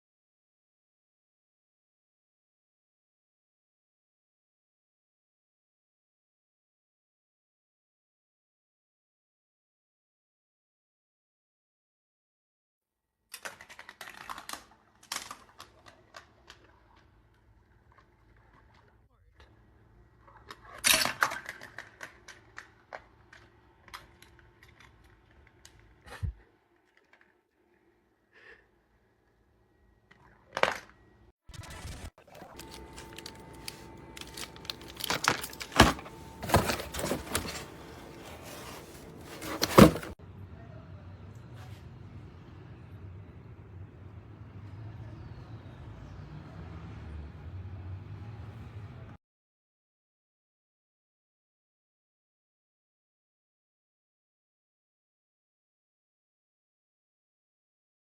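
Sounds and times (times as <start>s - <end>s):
plastic pieces rustling: 32.6s - 40.2s.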